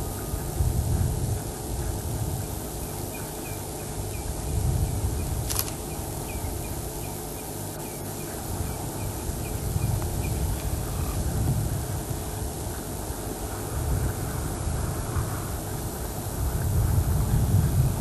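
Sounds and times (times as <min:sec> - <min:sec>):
wind rumble on microphone: 0:00.0 - 0:07.0, 0:08.2 - 0:18.0
sharp click: 0:05.4 - 0:05.8.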